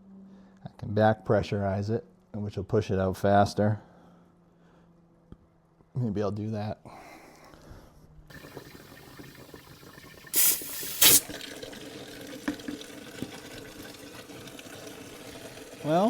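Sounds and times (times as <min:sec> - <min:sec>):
compressed air hissing: 0:08.3 - 0:11.4
liquid filling a bucket: 0:08.3 - 0:16.0.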